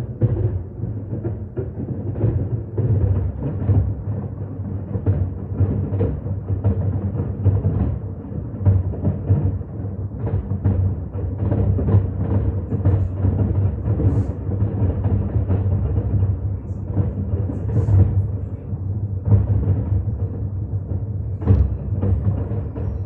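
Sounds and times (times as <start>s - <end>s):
fireworks bursting: 11.2s - 18.6s.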